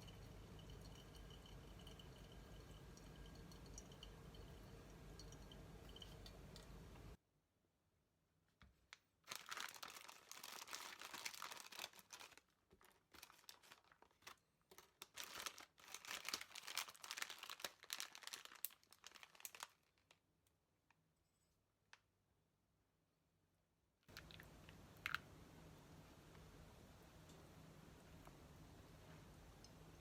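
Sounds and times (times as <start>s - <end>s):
snack wrapper crinkling: 9.2s - 20.2s.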